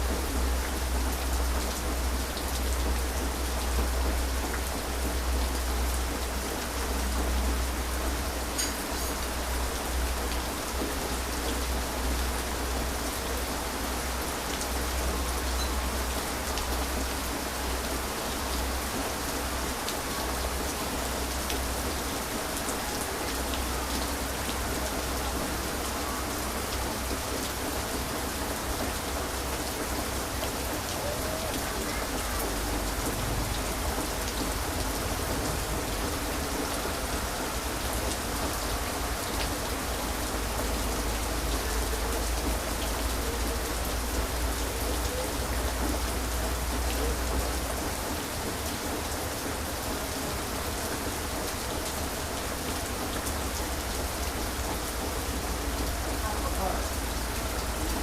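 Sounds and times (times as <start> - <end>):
heavy rain falling: 0.0 - 58.0.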